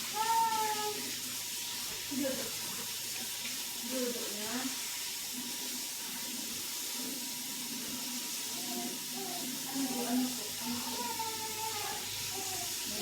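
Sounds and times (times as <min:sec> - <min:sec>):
tap water running into sink: 0:00.0 - 0:13.0.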